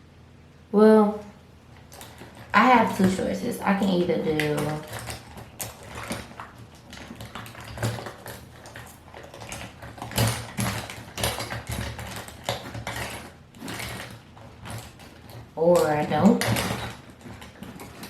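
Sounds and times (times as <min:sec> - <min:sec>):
makeup containers clicking and knocking: 0:01.9 - 0:18.0.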